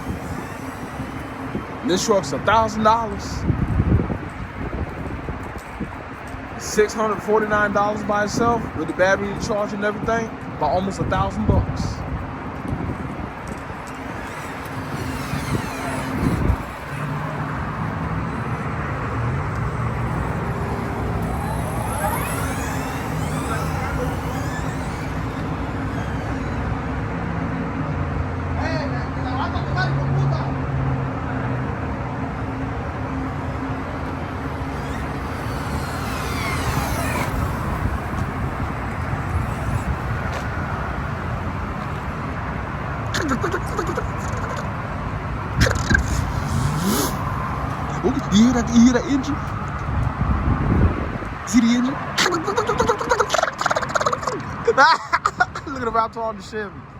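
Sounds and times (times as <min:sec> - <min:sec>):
vehicle engine running: 0:00.0 - 0:27.8, 0:32.5 - 0:50.2
whines rising and falling: 0:00.0 - 0:28.6, 0:32.0 - 0:54.6.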